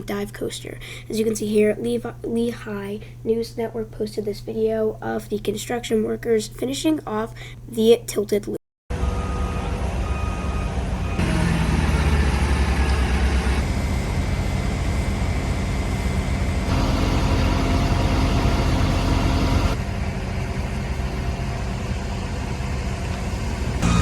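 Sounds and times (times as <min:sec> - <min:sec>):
heavy machinery engines rumbling: 0:08.9 - 0:24.0.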